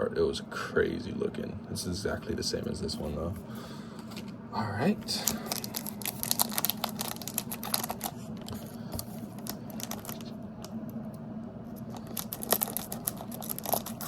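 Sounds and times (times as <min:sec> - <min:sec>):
foil wrappers crinkling: 0:05.1 - 0:10.4, 0:11.7 - 0:14.0.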